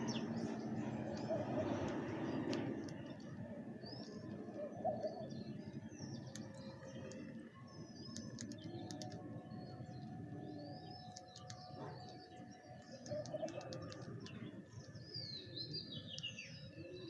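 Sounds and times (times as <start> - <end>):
small birds chirping: 0.0 - 17.0
sharp clicks: 1.1 - 3.4, 6.2 - 9.2, 11.0 - 12.2, 12.8 - 15.0.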